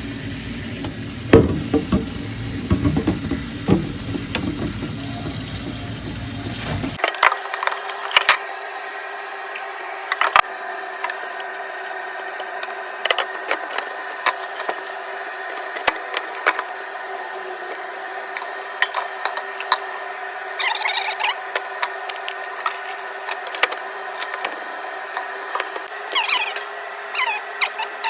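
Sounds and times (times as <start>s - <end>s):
plastic containers clicking and knocking: 1.3s - 5.0s.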